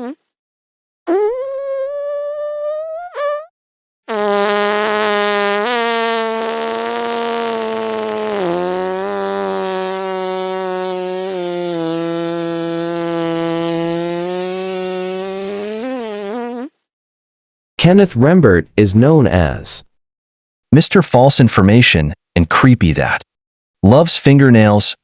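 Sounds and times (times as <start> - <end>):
fart sound effect: 0.0 - 0.2, 1.1 - 3.5, 4.1 - 16.7.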